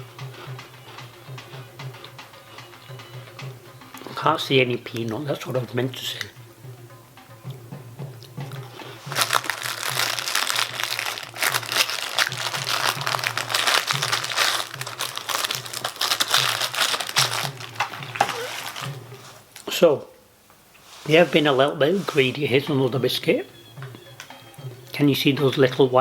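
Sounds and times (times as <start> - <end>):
foil wrapper crinkling: 9.0 - 19.8.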